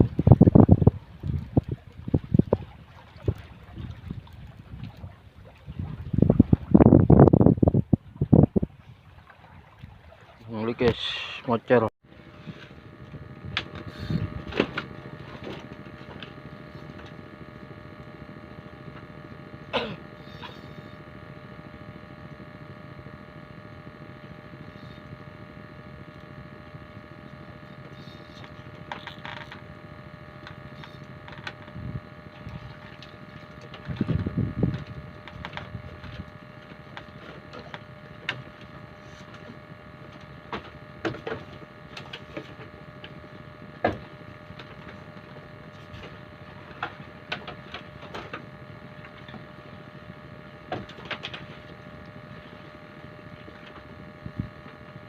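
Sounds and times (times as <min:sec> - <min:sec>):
small engine humming: 0:12.0 - 0:55.0.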